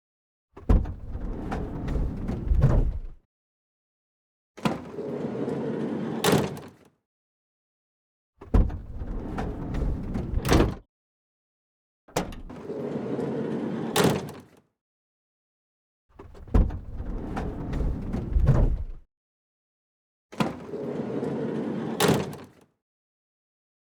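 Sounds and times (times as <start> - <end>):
sliding door clunk at end stop: 0.7 - 3.2, 8.5 - 10.8, 12.2 - 12.6, 16.3 - 19.0
sliding door latch click: 12.2 - 12.5
sliding door rolling along track: 16.9 - 19.0, 20.9 - 22.0.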